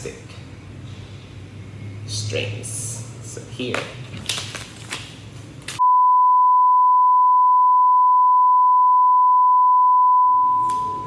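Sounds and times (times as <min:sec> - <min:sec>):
loud electronic beep: 0:05.8 - 0:11.0.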